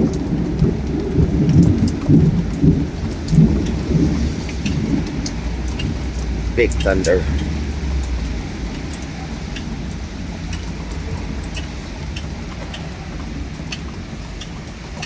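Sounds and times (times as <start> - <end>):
drops ticking on hard surface: 0.0 - 15.0
low rumble of thunder: 0.0 - 15.0
rain falling: 0.0 - 15.0.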